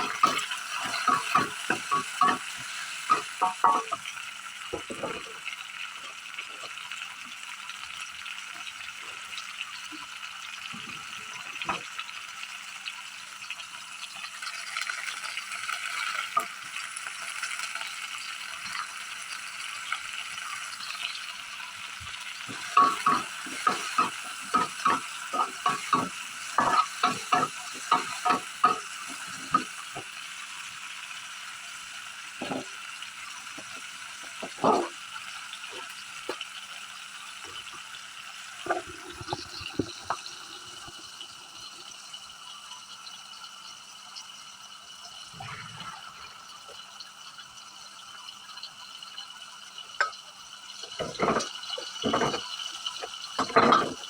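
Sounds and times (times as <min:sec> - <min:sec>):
utensil scraping a pan: 0:00.0 - 0:04.1, 0:22.5 - 0:30.1, 0:51.0 - 0:52.5
food sizzling in a pan: 0:00.0 - 0:54.0.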